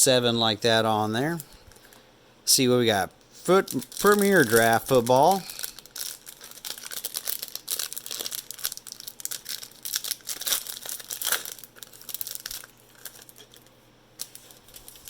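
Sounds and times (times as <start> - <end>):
plastic wrapper crinkling and tearing: 3.5 - 15.0.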